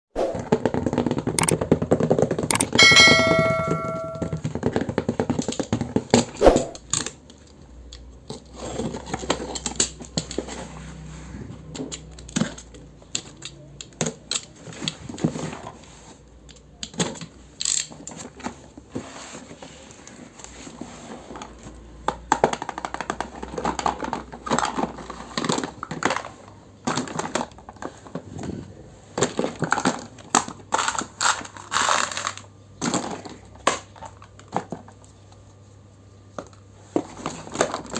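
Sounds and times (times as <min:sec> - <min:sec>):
toy pieces clicking and clinking: 0:01.4 - 0:01.6, 0:02.5 - 0:04.3.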